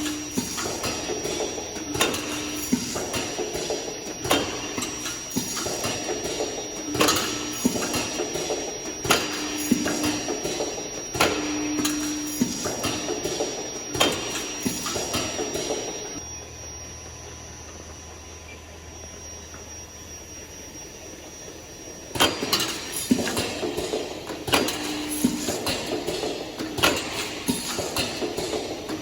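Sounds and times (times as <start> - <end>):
machine mechanical clacks: 0.0 - 16.2, 22.1 - 29.0
low machine hum: 0.0 - 29.0.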